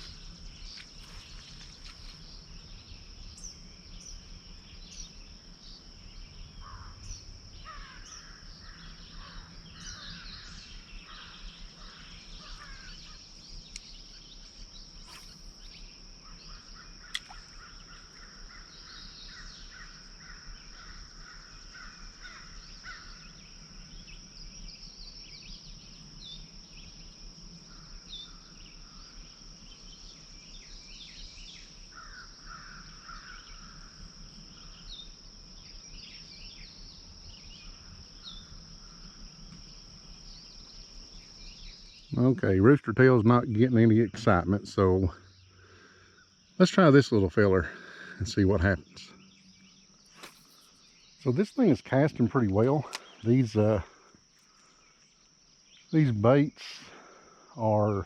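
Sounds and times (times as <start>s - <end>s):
birds chirping: 0.0s - 58.0s
insect drone: 0.0s - 58.0s
crows cawing: 6.6s - 13.2s, 16.5s - 23.3s, 31.9s - 34.0s
sharp click: 15.1s - 15.5s, 17.1s - 17.5s.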